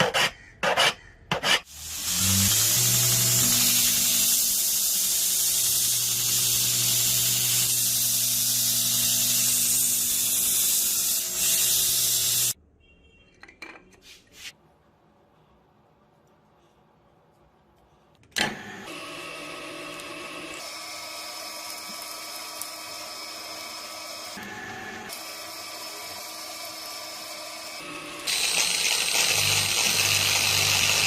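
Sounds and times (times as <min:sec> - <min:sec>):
power tool motor hum: 0:18.5 - 0:31.0.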